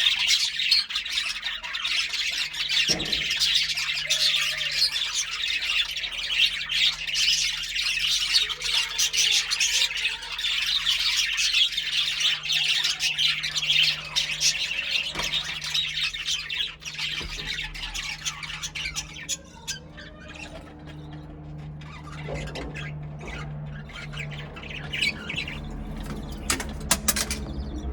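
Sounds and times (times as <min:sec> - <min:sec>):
budgerigars chattering and chirping: 0:00.0 - 0:27.9
faint low hum: 0:11.8 - 0:27.9.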